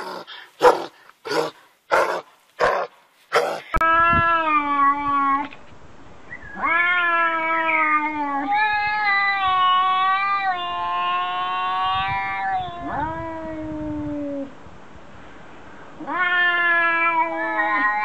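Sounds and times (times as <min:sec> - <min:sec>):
cat yowling: 0:06.6 - 0:13.7, 0:16.0 - 0:18.0.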